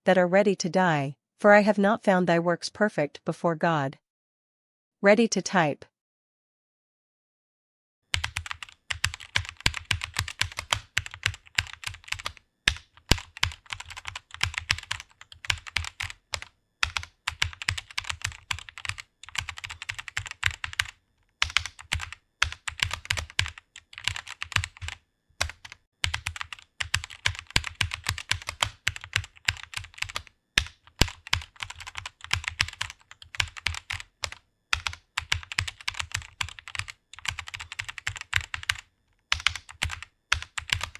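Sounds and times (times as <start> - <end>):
fast typing on keyboard: 8.1 - 40.9.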